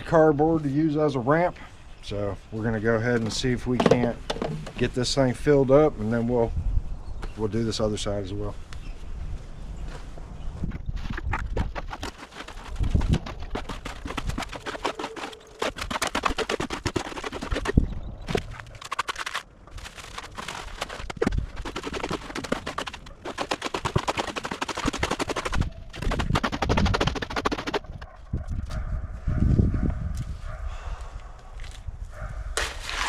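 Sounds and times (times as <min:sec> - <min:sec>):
wet concrete gritty rattling: 0:02.8 - 0:05.2, 0:10.7 - 0:28.2.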